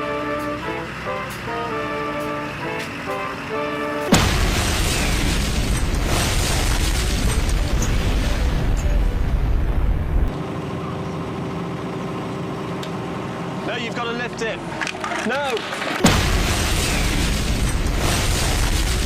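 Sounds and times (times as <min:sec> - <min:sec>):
music: 0:00.0 - 0:04.7, 0:06.4 - 0:10.3
explosion bang and rumble: 0:04.1 - 0:10.4, 0:16.0 - 0:19.0.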